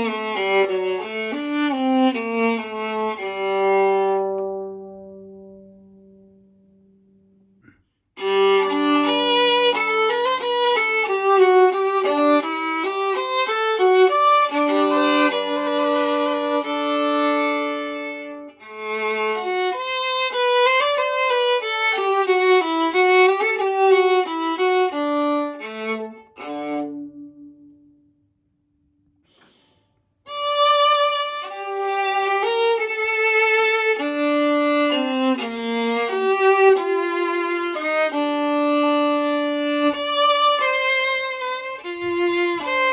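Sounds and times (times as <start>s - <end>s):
bowed viola melody: 0.0s - 6.8s, 7.6s - 28.2s, 30.2s - 42.9s.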